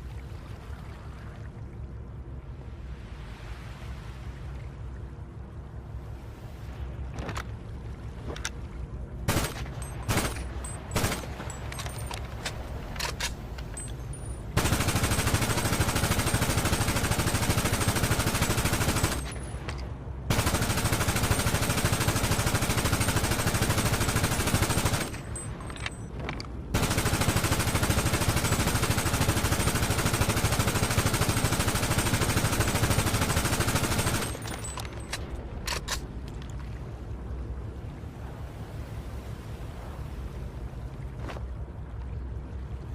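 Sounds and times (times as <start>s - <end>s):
automatic gunfire bursts: 9.3s - 11.3s, 14.6s - 19.3s, 20.3s - 25.2s, 26.8s - 34.6s
sharp gun clicks: 9.3s - 14.0s, 34.2s - 36.1s.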